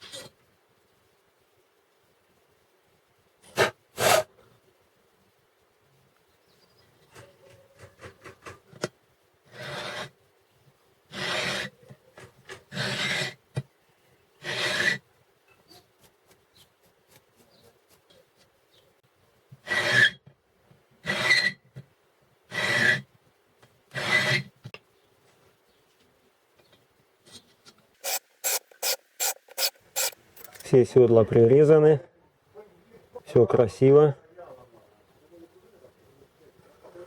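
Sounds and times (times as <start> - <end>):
valve seat cutter scraping: 28.0 - 30.6.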